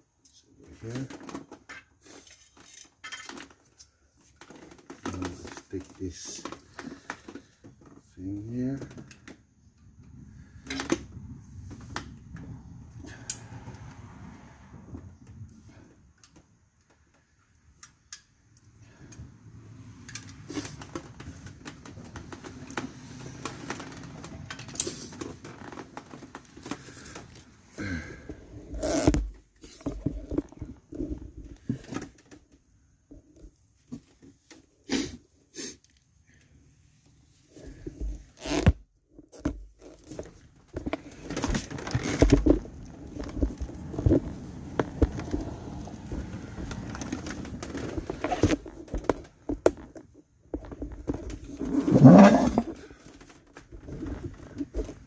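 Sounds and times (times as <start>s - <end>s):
quiet rubbing: 51.4s - 53.0s.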